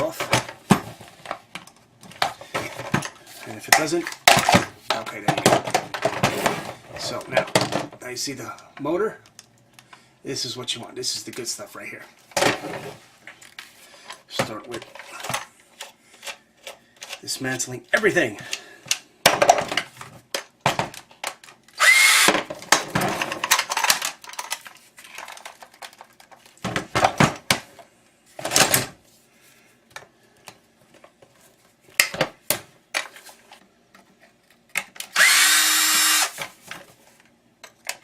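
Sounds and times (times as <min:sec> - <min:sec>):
power drill whining: 0:21.8 - 0:22.3, 0:35.1 - 0:36.4
metal parts clicking and knocking: 0:22.8 - 0:26.4.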